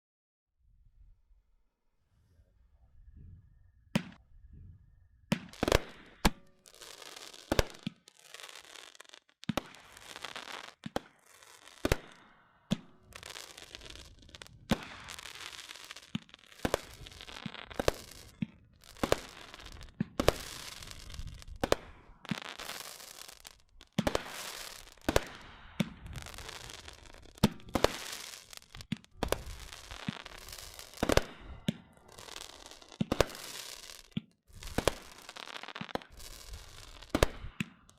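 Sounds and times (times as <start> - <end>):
firework bangs: 5.3 - 37.9
firework crackling and hissing: 5.4 - 37.9.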